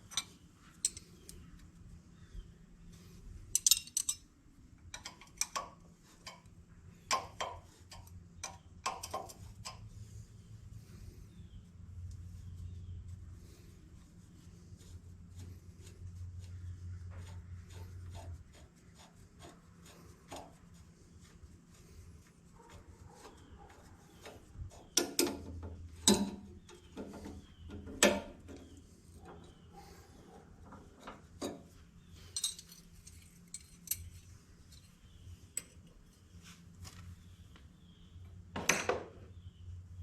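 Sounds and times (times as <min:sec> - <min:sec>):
hand tools scraping metal: 0:30.8 - 0:35.9.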